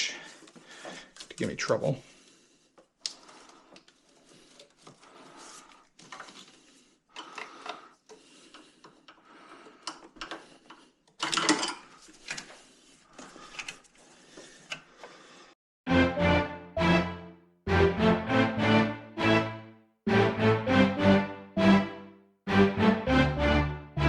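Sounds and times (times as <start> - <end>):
tools clicking and scraping: 7.1 - 14.0.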